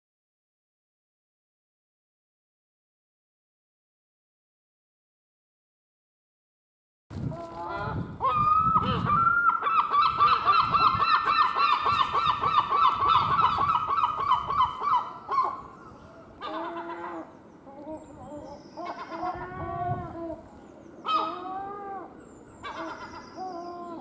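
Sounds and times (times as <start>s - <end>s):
gulls calling: 7.4s - 24.0s.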